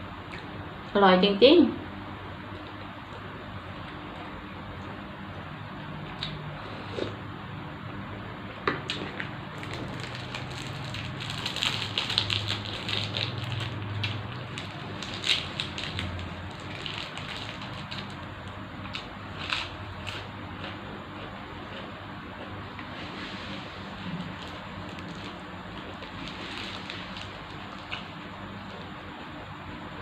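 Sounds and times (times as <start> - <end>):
small crunches: 8.9 - 29.0
person chewing: 18.9 - 28.2.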